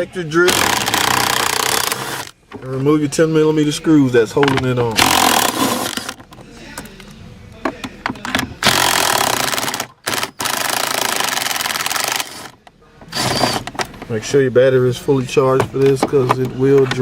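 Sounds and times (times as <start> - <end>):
cordless drill spinning: 0.5 - 2.3, 5.0 - 6.2, 8.6 - 12.5
drill clicks: 0.5 - 2.3, 5.0 - 6.2, 8.6 - 12.6.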